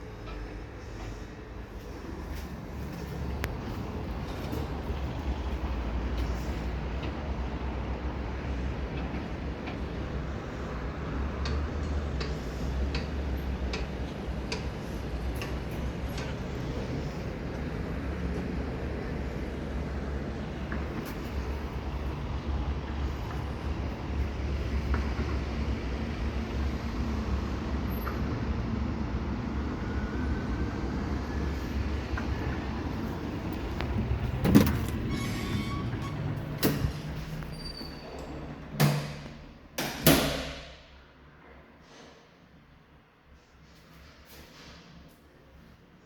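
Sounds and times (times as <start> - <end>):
lift humming: 31.2 - 38.8.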